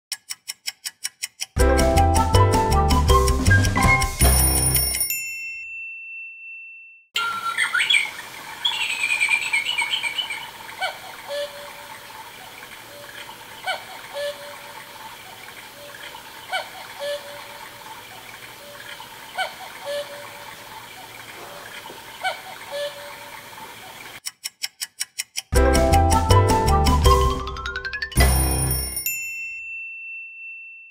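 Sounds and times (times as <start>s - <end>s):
birds chirping: 7.2s - 24.2s
trickling water: 7.2s - 24.2s
electronic cuckoo clock call: 14.0s - 14.7s, 15.7s - 17.8s, 18.6s - 20.5s.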